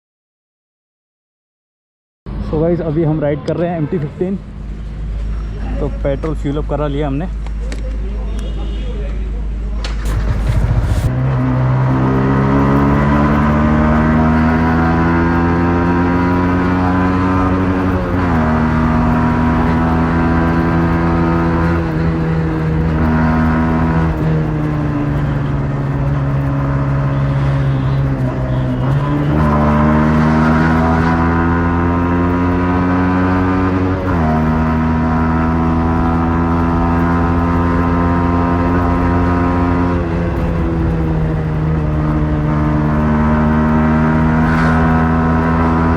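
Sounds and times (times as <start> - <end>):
motorcycle engine accelerating: 9.8 - 45.9.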